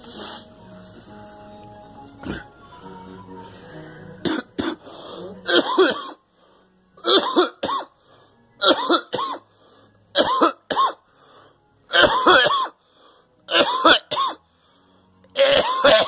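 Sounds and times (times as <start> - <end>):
person coughing hard: 4.2 - 6.2, 7.0 - 7.9, 8.6 - 9.4, 10.2 - 11.0, 11.9 - 12.8, 13.5 - 14.4, 15.4 - 16.0.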